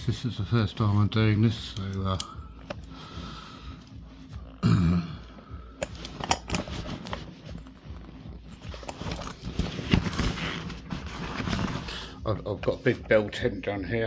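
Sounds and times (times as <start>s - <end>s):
handcuffs and chain rattling: 5.8s - 11.0s.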